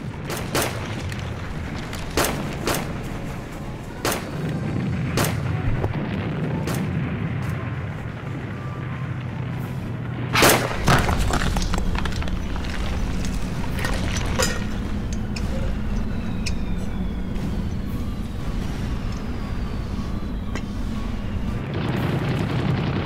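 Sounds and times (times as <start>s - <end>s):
cracks and impacts: 0.0s - 7.9s, 10.3s - 19.7s
music: 0.0s - 21.9s
heavy blasts: 0.0s - 23.0s
steady low rumble: 0.0s - 23.0s.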